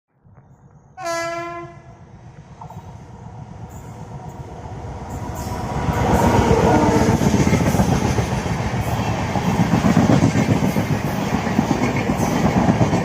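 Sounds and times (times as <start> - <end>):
train horn blast: 1.0 - 2.0
train wheels rumbling on rails: 1.2 - 13.0.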